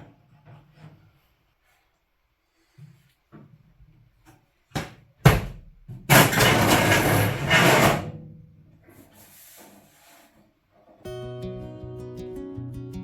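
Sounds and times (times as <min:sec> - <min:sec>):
loud rough scraping: 0:06.1 - 0:08.2.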